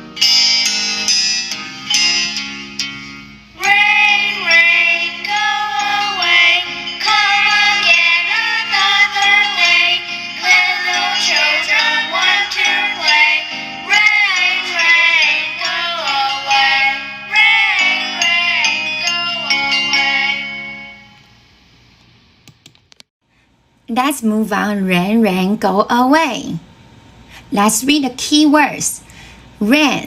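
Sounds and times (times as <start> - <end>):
jingly accompaniment: 0.2 - 21.2
children's song singing: 3.6 - 20.8.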